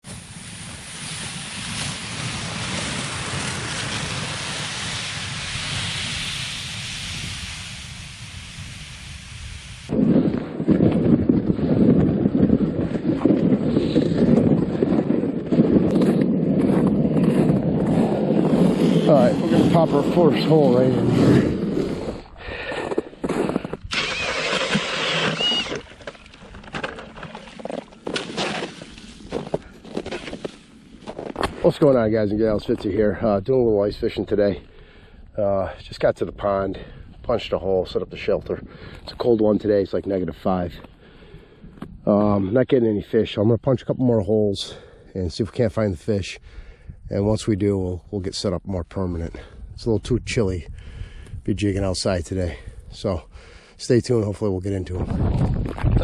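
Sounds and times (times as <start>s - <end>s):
wind blowing across microphone: 0.0s - 56.0s
drill grinding through ice: 22.9s - 30.5s.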